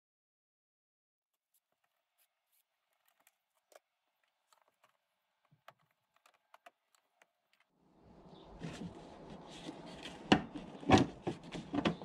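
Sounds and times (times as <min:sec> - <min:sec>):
faint clicks and taps: 0:01.8 - 0:07.7.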